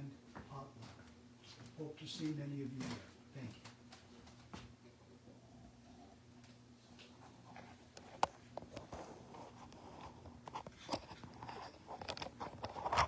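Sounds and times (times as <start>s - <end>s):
low electrical hum: 0.0s - 13.0s
clicks and rustles of handling: 6.4s - 13.0s.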